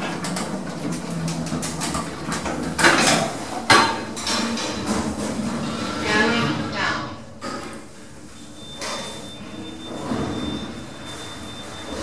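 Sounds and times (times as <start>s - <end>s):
lift doors sliding: 8.6s - 12.0s.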